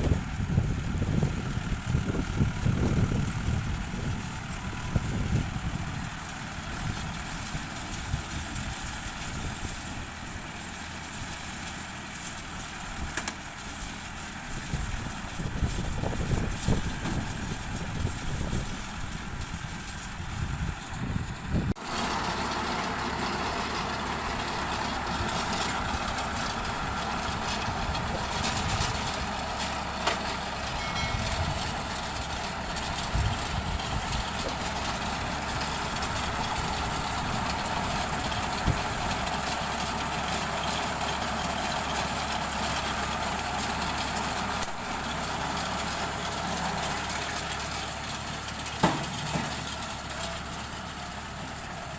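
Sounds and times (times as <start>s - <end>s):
gusty rumble: 0.0s - 8.7s, 14.6s - 21.8s, 24.6s - 29.6s, 30.7s - 39.2s
tractor engine running: 0.0s - 51.9s.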